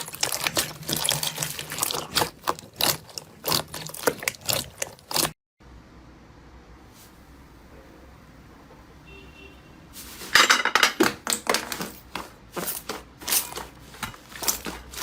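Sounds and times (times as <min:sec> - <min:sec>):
slime squelching and popping: 0:00.0 - 0:05.4.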